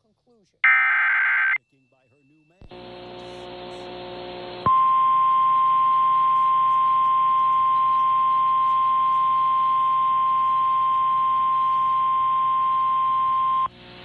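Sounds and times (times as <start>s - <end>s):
steady emergency alert tone: 4.7s - 13.7s.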